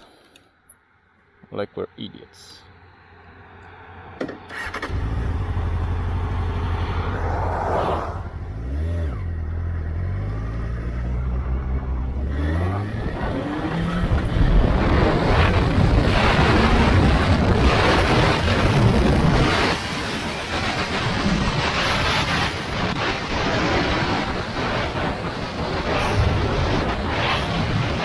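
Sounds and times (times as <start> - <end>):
rushing noise: 4.5 - 9.0, 12.4 - 28.0
motorcycle engine revving: 4.5 - 28.0.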